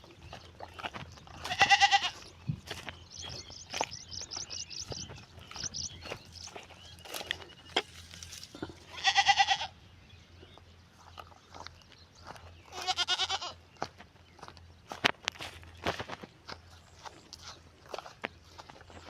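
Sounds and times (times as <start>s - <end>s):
farm animal bleating: 0.1s - 9.8s, 12.3s - 13.9s
high twittering chirps: 2.7s - 7.8s.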